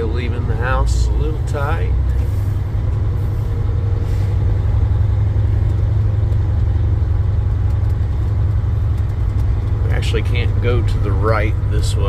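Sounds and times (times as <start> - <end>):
truck engine droning: 0.0 - 12.0.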